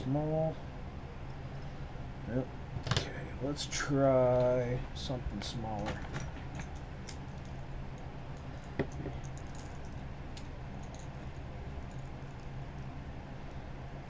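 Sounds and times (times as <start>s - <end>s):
steady low hum: 0.0s - 14.0s
small tools clicking: 8.4s - 11.2s.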